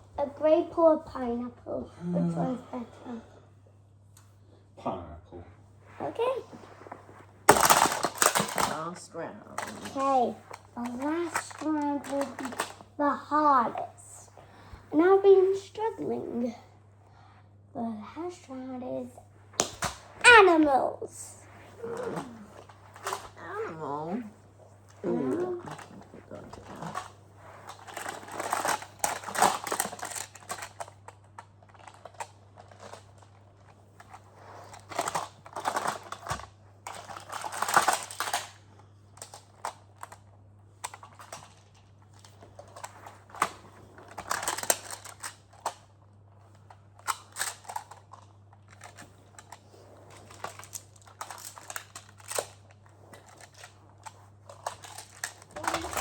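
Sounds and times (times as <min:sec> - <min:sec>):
plastic tiles clicking and clattering: 0:07.5 - 0:08.8, 0:27.7 - 0:33.3, 0:34.8 - 0:38.6, 0:40.8 - 0:45.8, 0:47.0 - 0:56.0.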